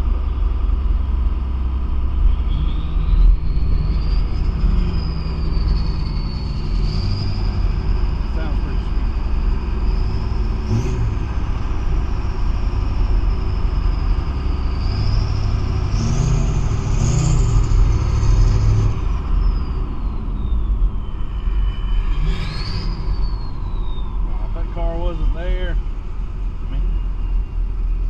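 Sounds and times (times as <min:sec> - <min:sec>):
car engine rumbling: 0:00.0 - 0:28.0
high-pitched engine whine: 0:00.0 - 0:28.0.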